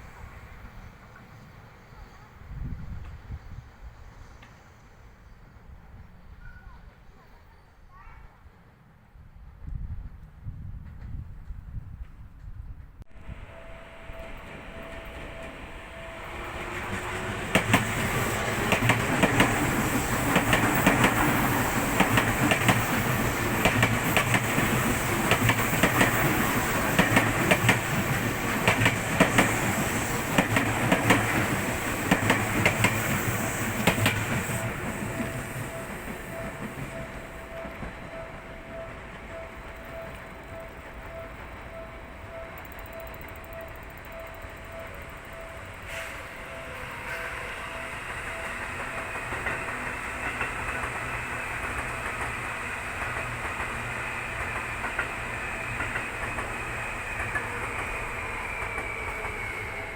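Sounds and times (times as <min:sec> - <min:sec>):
electric train passing: 0:00.0 - 0:07.7, 0:13.1 - 0:59.9
wheels clicking over rail joints: 0:14.2 - 0:41.7.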